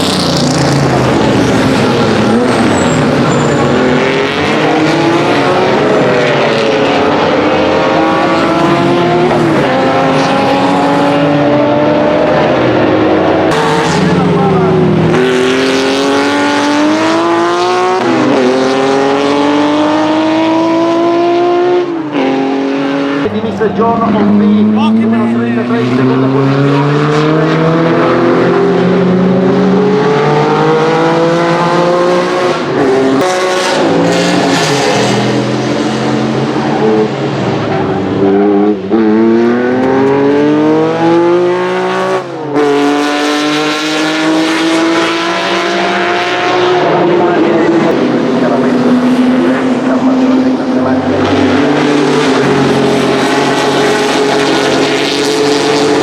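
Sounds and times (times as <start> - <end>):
race car engine accelerating: 0.0 - 56.0.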